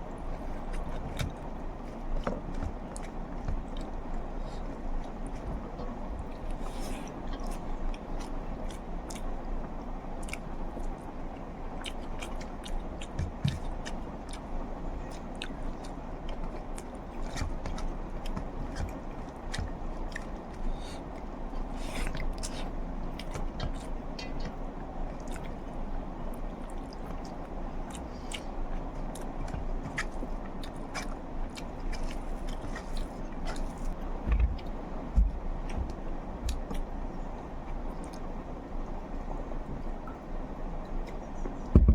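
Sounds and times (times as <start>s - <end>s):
steady background hum: 0.0s - 41.9s
chewing with wet mouth clicks: 0.3s - 38.4s, 39.6s - 41.7s
soft thumps: 34.2s - 36.8s, 41.7s - 41.9s.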